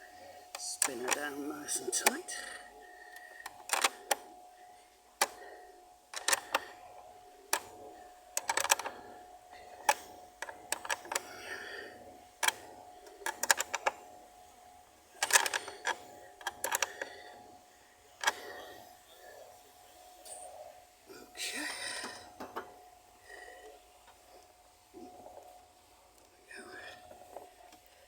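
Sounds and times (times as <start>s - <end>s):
spanner clicking against nut: 6.2s - 6.5s, 8.4s - 8.9s, 10.7s - 11.2s, 12.4s - 14.0s, 15.2s - 17.0s.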